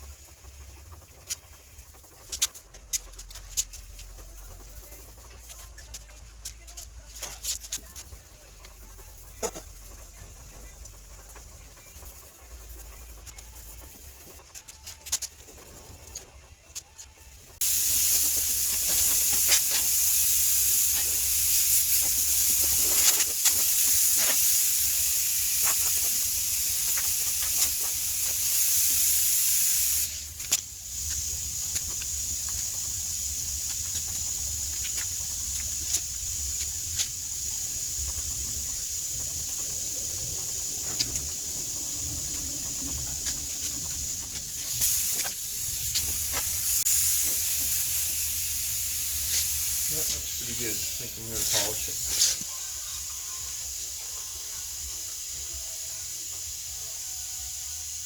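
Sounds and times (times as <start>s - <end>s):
steady hiss: 16.8s - 58.0s.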